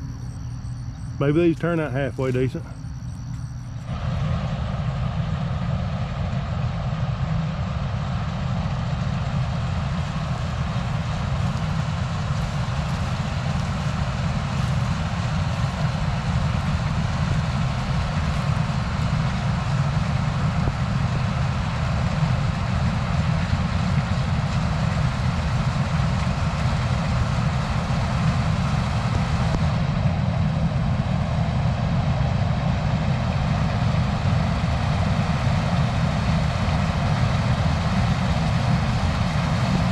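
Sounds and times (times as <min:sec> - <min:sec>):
machinery noise: 0:00.0 - 0:05.7
combine harvester engine drone: 0:00.0 - 0:39.9.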